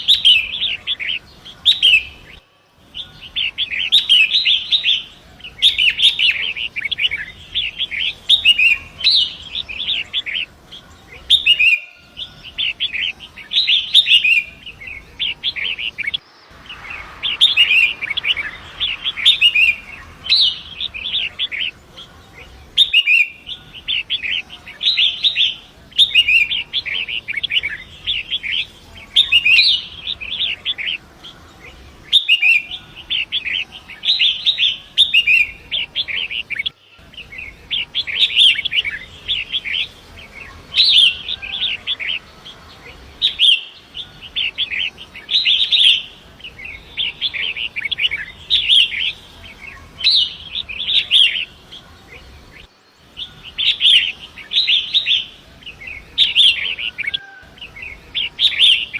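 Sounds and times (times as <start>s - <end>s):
bird singing chattering song: 0.0s - 58.9s
river water rushing: 16.1s - 21.9s.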